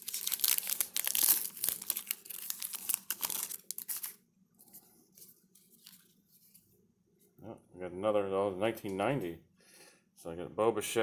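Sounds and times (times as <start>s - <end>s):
wrapper crinkling: 0.0s - 6.7s.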